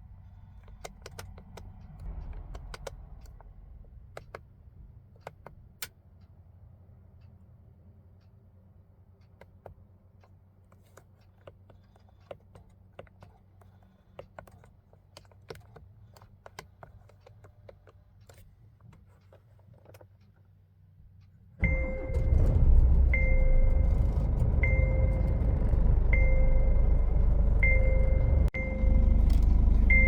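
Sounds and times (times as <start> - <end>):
high beeping tone: 21.6 - 30.0
loud low rumble: 21.6 - 30.0.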